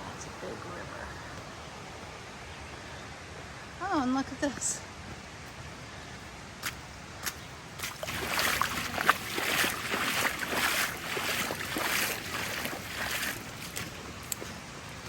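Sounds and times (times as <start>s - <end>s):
footsteps splashing in shallow water: 5.1s - 15.0s.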